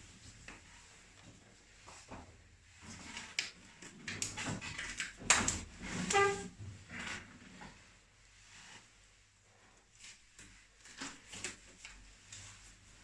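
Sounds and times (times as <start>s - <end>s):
short squeak: 6.1s - 6.5s.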